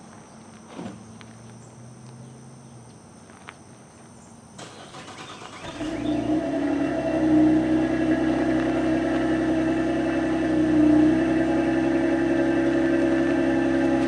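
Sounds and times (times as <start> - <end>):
car engine starting and idling: 4.6 - 14.0.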